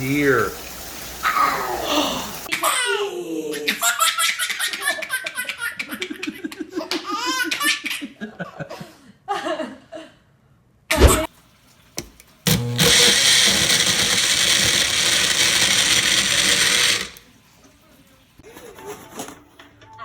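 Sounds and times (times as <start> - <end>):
baby laughing: 2.5 - 8.2.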